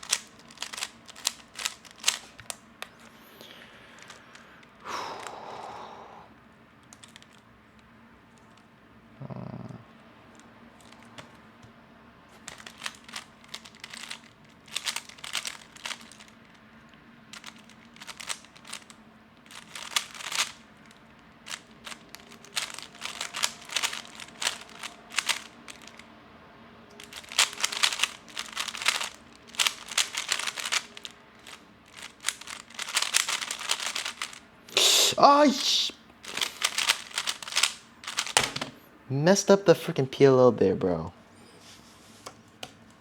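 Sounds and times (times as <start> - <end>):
puzzle cube plastic clicking: 0.0 - 3.2, 4.0 - 5.3, 6.8 - 7.5, 10.3 - 11.4, 12.4 - 16.6, 17.3 - 26.0, 26.9 - 35.4, 36.1 - 38.8.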